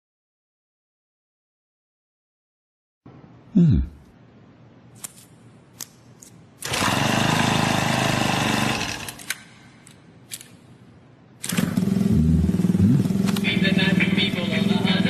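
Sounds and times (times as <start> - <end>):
rapid mechanical rattling: 6.6 - 9.2, 11.5 - 12.1.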